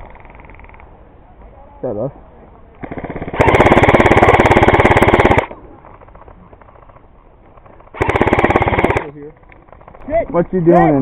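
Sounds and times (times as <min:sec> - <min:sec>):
airsoft gun firing bursts: 0:02.8 - 0:05.6, 0:07.9 - 0:09.1.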